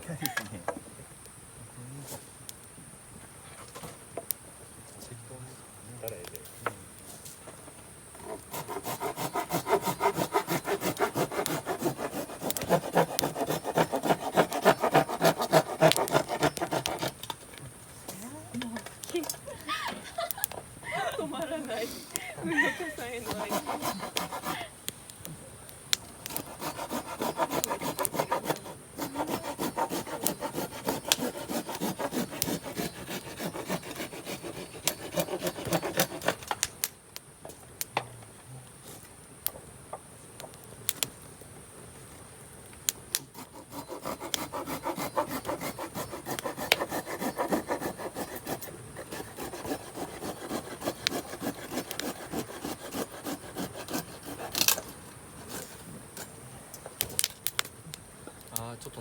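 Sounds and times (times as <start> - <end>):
hand saw cutting wood: 8.2 - 17.5, 22.7 - 24.7, 26.2 - 36.6, 43.1 - 56.3.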